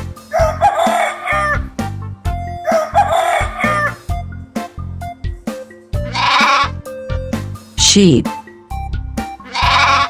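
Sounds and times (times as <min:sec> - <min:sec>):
children's music with beat: 0:00.0 - 0:09.4
rooster crowing: 0:00.3 - 0:01.6, 0:02.7 - 0:04.0, 0:09.5 - 0:10.0
harsh fowl call: 0:02.7 - 0:04.0, 0:06.0 - 0:06.8, 0:09.4 - 0:10.0.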